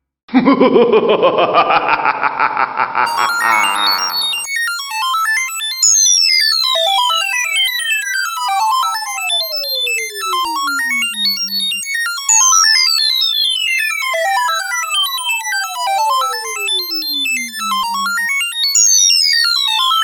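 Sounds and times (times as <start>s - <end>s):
rippling electronic notes: 3.1s - 5.2s, 5.8s - 20.0s
whistling tone sliding down: 6.8s - 20.0s.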